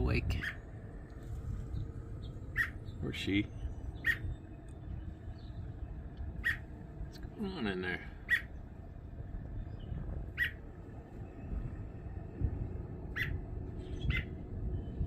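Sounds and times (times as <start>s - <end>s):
robin calls: 0.0s - 1.0s, 1.6s - 15.0s
low microphone rumble: 0.0s - 7.4s, 8.0s - 15.0s.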